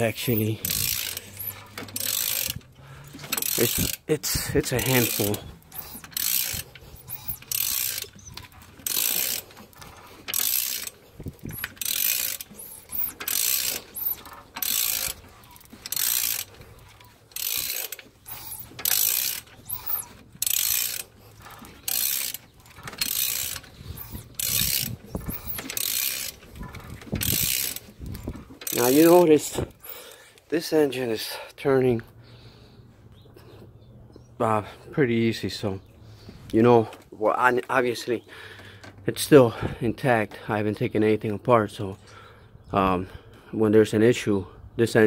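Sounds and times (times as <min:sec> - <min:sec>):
socket ratchet clicking: 0:00.0 - 0:29.1.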